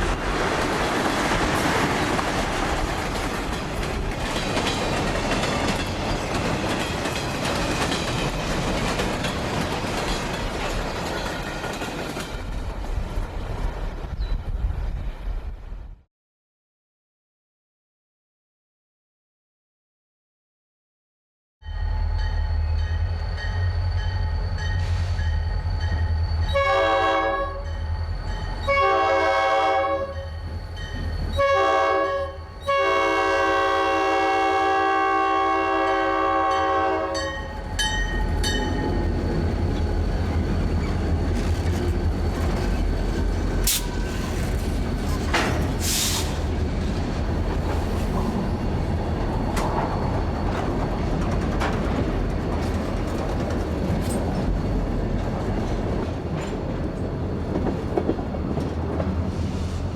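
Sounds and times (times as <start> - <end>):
train wheels rolling: 0.0 - 15.0, 36.4 - 59.9
sharp squeals: 21.7 - 26.7
locomotive air horn blasts: 26.5 - 27.7, 28.6 - 30.3, 31.3 - 37.4.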